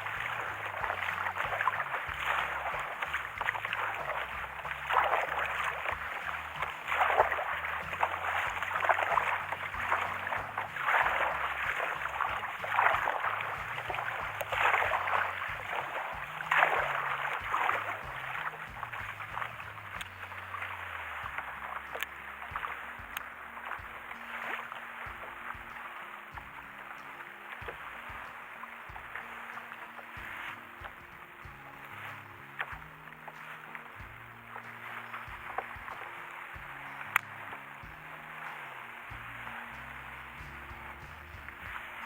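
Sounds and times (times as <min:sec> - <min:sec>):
water splashing around kayak: 0:00.0 - 0:42.0.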